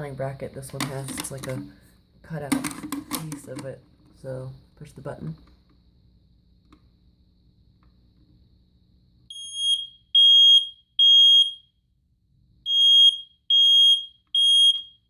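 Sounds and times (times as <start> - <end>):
smoke alarm beeping: 9.3 - 11.8, 12.6 - 15.0.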